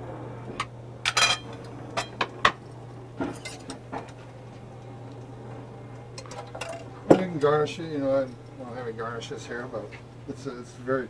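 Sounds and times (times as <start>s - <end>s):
steady low hum: 0.0s - 11.0s
utensils clinking on plate and pan: 1.1s - 2.2s.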